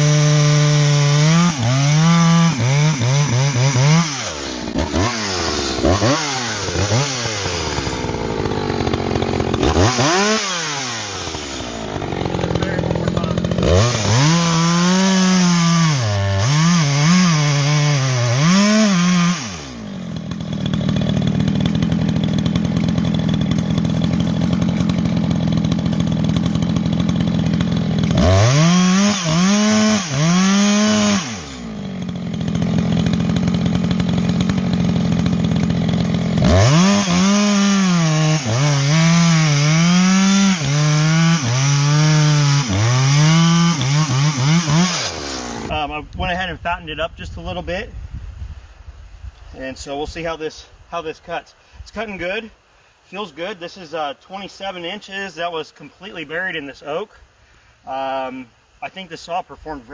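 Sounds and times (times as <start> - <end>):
chainsaw revving and idling: 0.0 - 46.0.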